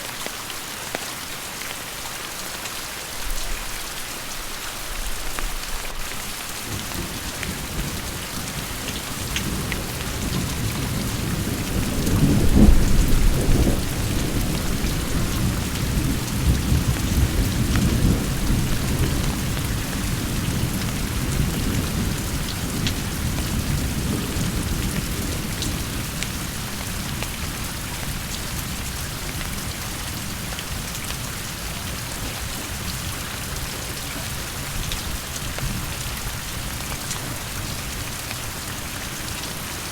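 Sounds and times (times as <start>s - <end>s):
steady rain falling: 0.0s - 39.9s
rolling thunder: 9.2s - 25.6s.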